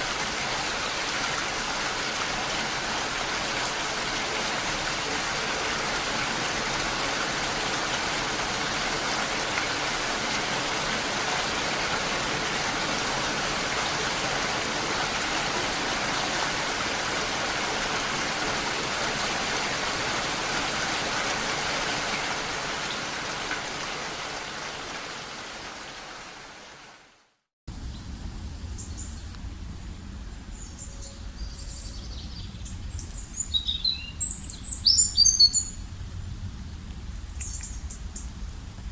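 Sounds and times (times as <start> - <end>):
heavy rain: 0.0 - 28.8
birds chirping: 30.4 - 35.8.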